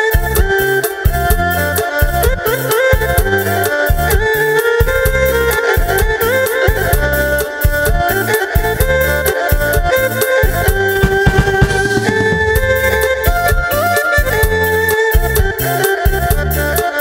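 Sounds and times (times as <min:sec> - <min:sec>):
drum and bass rhythm: 0:10.8 - 0:14.0.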